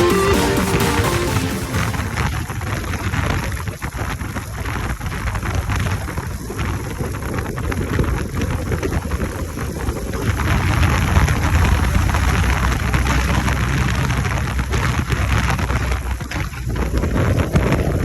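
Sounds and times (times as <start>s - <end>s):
motorcycle engine rumble: 6.2s - 17.5s.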